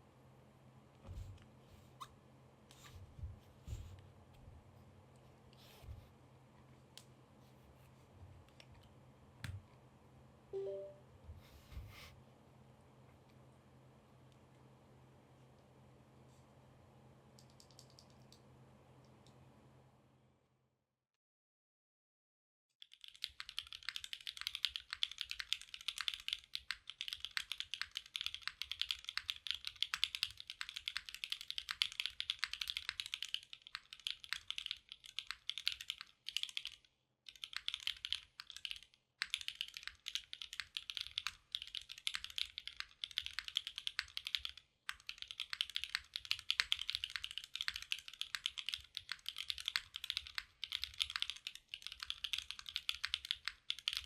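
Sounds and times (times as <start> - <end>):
fast typing on mechanical keyboard: 17.4 - 18.4, 22.8 - 54.0.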